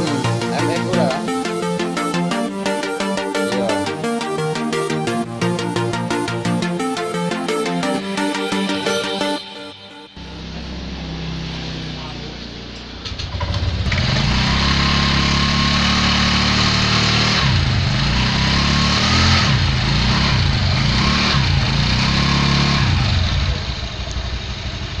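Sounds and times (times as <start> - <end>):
scooter engine running: 10.2 - 25.0.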